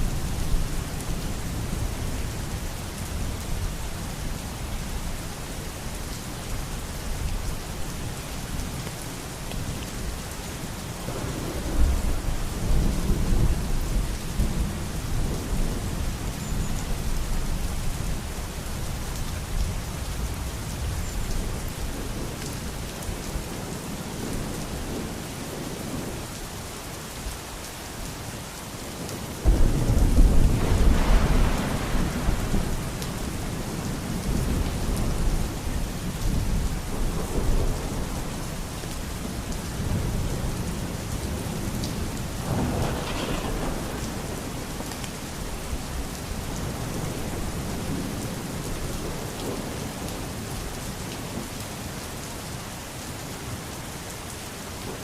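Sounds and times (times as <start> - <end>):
steady rain falling: 0.0 - 55.0
thunder rolling: 29.4 - 35.5, 42.2 - 45.8.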